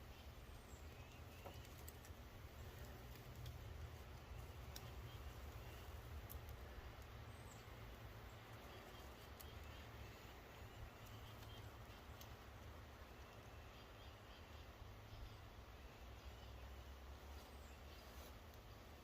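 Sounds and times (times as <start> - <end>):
faint clicks: 1.0 - 7.7, 8.4 - 13.4.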